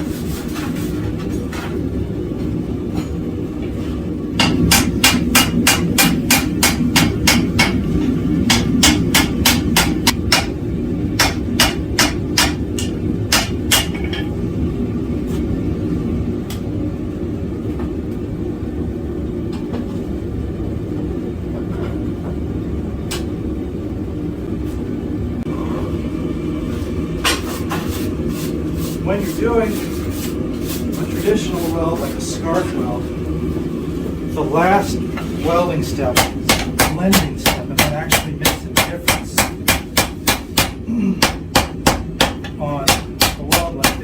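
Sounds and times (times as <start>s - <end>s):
forge burner roar: 0.0s - 44.0s
hammer striking steel on anvil: 4.4s - 7.9s, 8.5s - 10.6s, 11.2s - 14.4s, 36.1s - 44.0s.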